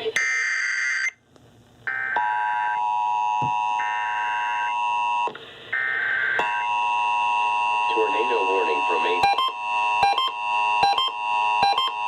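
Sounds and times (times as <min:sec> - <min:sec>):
digital data bursts: 0:07.8 - 0:12.0
two-tone attention signal: 0:07.8 - 0:12.0.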